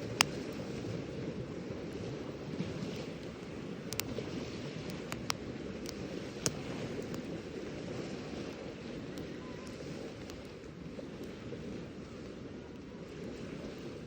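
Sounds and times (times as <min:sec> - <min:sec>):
fire crackles and pops: 0:00.0 - 0:01.1, 0:01.8 - 0:11.5
campfire burning: 0:00.0 - 0:14.0.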